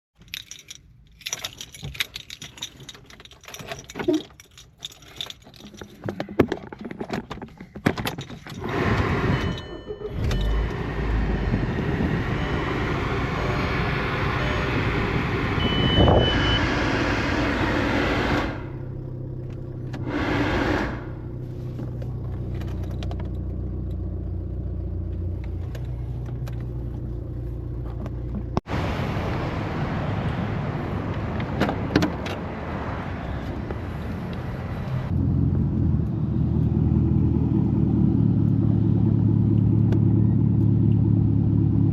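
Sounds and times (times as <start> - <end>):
keys jangling: 0.2 - 8.7
car engine starting and running: 0.2 - 41.9.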